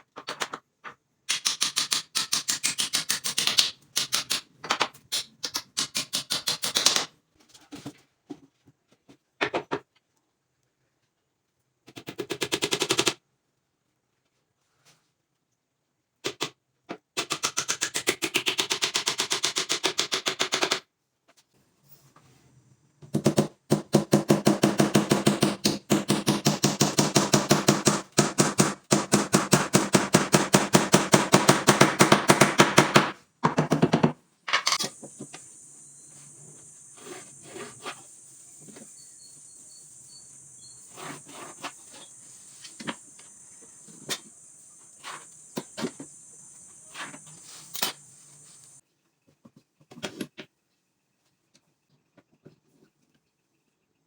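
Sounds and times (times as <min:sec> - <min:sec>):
rapid mechanical strikes: 0:23.2 - 0:33.2
steady high hiss: 0:34.7 - 0:48.8.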